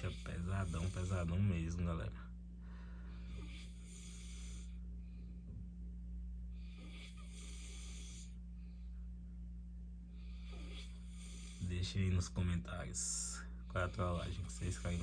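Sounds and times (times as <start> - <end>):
man snoring: 0.0 - 1.9, 3.1 - 4.8, 6.5 - 8.4, 10.2 - 12.2, 12.9 - 15.0
steady low hum: 0.0 - 15.0.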